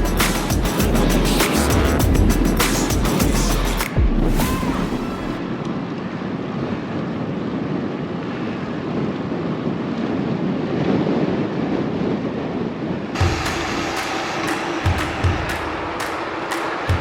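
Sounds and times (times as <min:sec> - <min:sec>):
wind rushing over microphone: 0:04.7 - 0:17.0.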